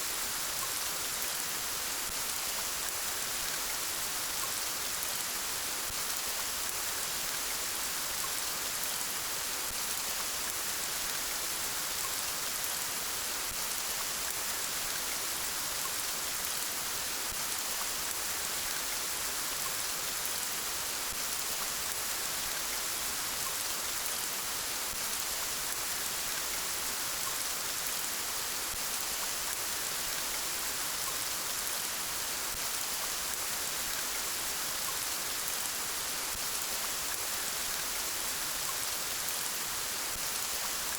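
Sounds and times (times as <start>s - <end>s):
steady rain falling: 0.0s - 40.9s.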